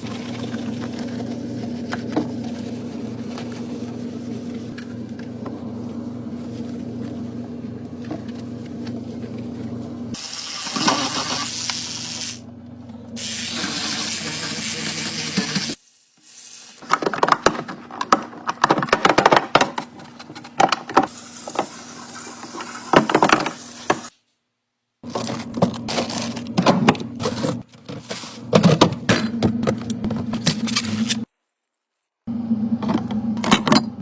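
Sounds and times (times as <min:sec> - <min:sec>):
low steady hum: 0:00.0 - 0:15.3.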